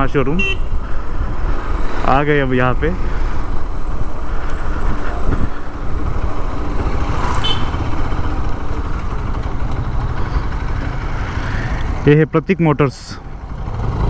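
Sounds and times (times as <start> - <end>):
wind buffeting microphone: 0.0 - 11.2
motorcycle engine rumble: 0.0 - 14.0.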